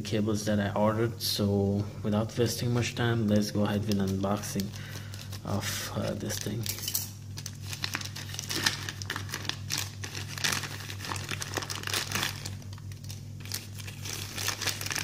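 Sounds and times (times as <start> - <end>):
packaging crinkling and rustling: 3.3 - 15.0.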